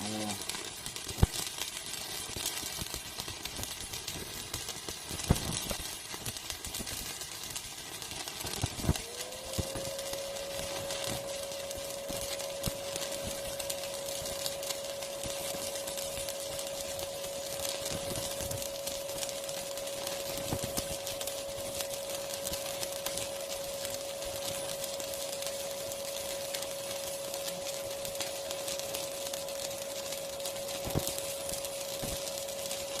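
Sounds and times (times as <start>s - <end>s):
welding arc crackling: 0.0s - 33.0s
high whine: 8.6s - 33.0s.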